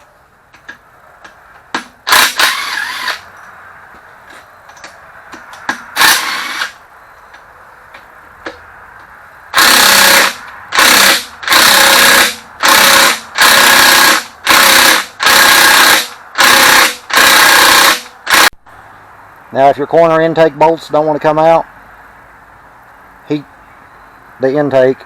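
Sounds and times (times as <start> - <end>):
power tool running in bursts: 2.1 - 3.2, 6.0 - 6.8, 9.6 - 18.5.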